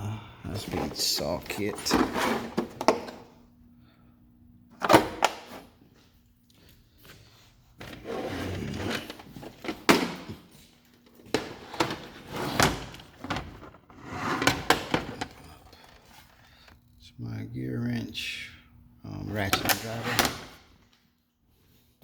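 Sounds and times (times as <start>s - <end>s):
drawer sliding scrape: 0.6s - 3.2s, 7.8s - 10.3s, 11.3s - 16.5s, 19.5s - 20.7s
tools clattering in metal drawer: 1.6s - 3.2s, 11.2s - 16.5s.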